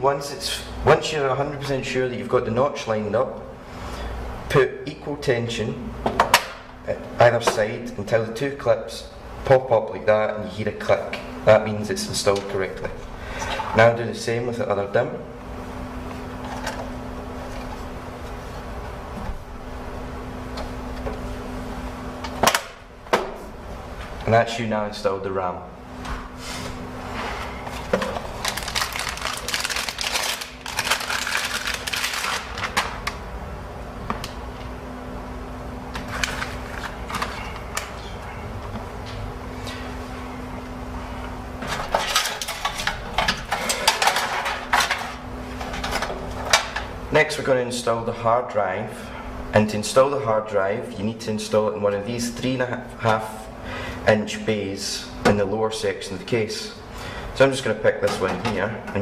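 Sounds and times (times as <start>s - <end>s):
steady low hum: 0.0s - 59.0s
computer parts clinking in metal case: 28.1s - 32.9s, 41.8s - 46.7s.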